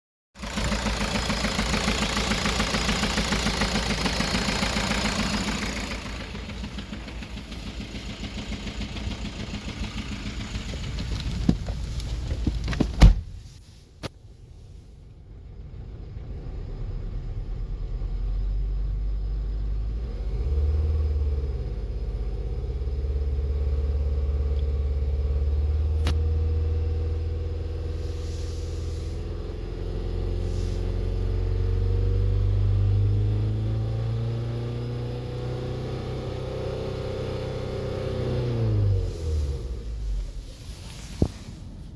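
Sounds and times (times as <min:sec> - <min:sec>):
engine running with misfire: 0:00.4 - 0:12.6.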